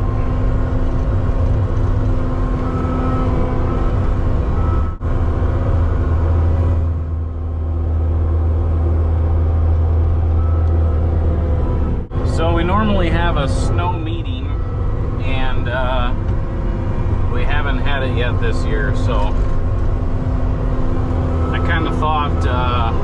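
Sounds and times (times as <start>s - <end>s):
heavy vehicle engine humming: 0.0s - 23.0s.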